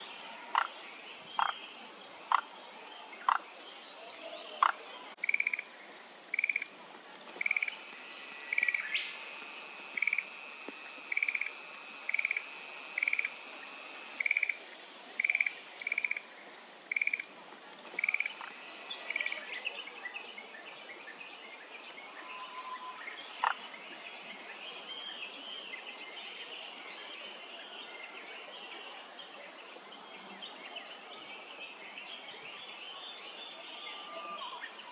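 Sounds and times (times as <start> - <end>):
rapidly pulsed frog calls: 1.4 - 1.6, 4.6 - 5.7, 6.3 - 16.3, 16.9 - 17.3, 17.9 - 19.6
frogs calling: 4.6 - 5.7, 6.3 - 6.7, 7.3 - 16.3, 16.9 - 19.6
sharp frog clicks: 4.6 - 5.7, 6.3 - 6.7, 7.4 - 7.8, 8.4 - 16.2, 16.9 - 17.3, 18.0 - 19.4
faint chirping: 7.3 - 16.3.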